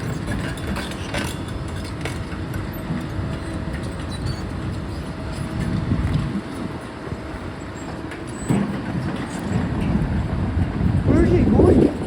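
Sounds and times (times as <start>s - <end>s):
low engine rumble: 9.5s - 12.0s.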